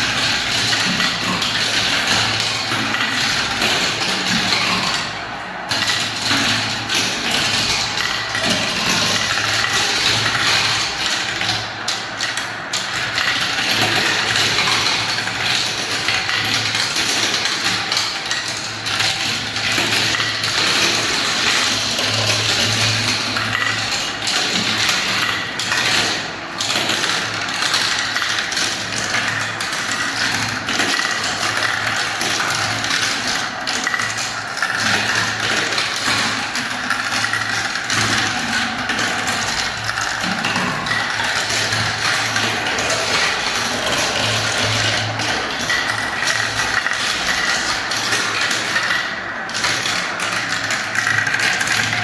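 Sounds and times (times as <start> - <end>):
marbles rolling and clattering: 24.6 - 52.0.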